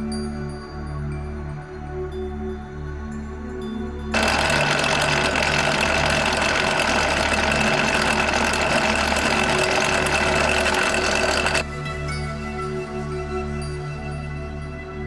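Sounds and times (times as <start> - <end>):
power tool motor whining: 4.2 - 11.6.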